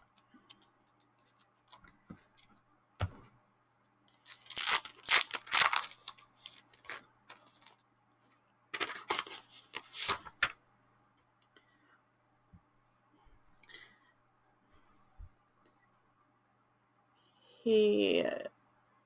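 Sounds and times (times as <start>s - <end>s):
packaging rustled and torn: 0.0s - 1.8s, 4.2s - 7.8s, 8.8s - 10.5s.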